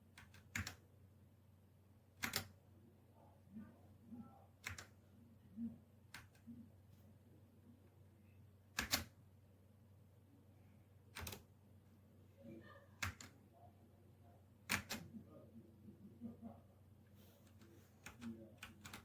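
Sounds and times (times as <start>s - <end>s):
mechanical keyboard keystrokes: 0.2s - 0.8s, 2.2s - 2.5s, 4.6s - 4.9s, 8.8s - 9.1s, 11.2s - 11.4s, 13.0s - 13.4s, 14.7s - 15.1s, 18.0s - 19.0s.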